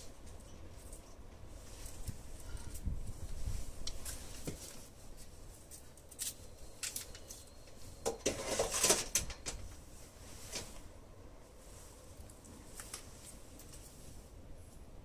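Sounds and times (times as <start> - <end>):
rattling and scraping: 8.1 - 9.7.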